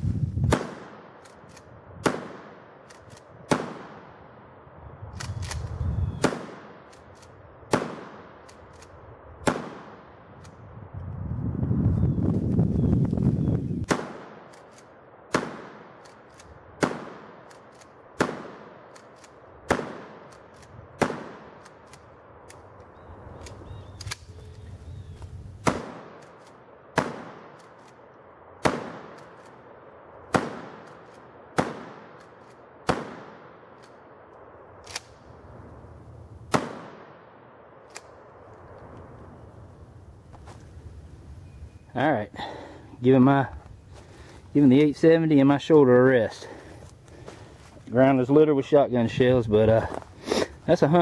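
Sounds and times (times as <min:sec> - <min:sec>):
shotgun shots echoing: 0:00.5 - 0:04.3, 0:06.2 - 0:07.1, 0:07.7 - 0:08.7, 0:09.4 - 0:10.3, 0:13.8 - 0:14.7, 0:15.3 - 0:21.9, 0:25.6 - 0:34.2, 0:36.5 - 0:38.2.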